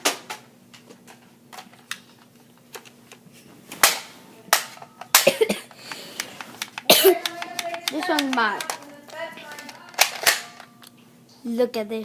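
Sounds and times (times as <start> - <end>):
plastic toy blasters clacking: 6.2 - 10.9.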